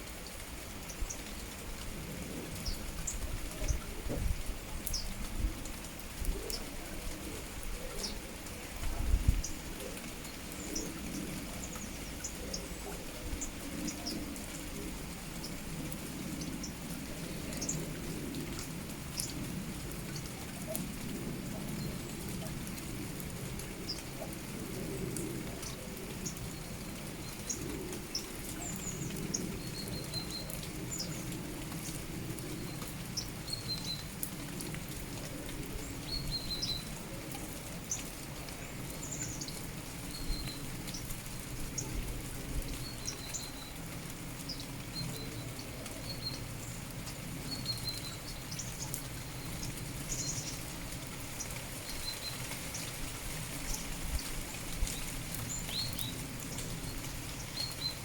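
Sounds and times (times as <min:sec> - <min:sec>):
steady rain: 0:00.0 - 0:58.0
small birds chirping: 0:09.3 - 0:14.8, 0:25.3 - 0:34.2, 0:35.7 - 0:43.8, 0:44.4 - 0:58.0.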